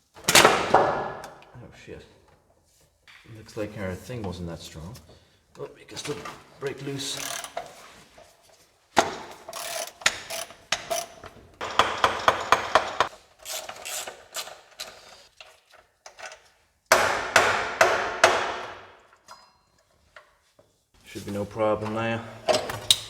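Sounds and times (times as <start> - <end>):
hand tools knocking on metal: 9.0 - 13.2.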